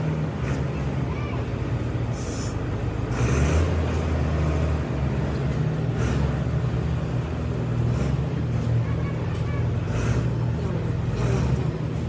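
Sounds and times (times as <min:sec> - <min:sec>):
short high hissing: 0:02.2 - 0:02.6.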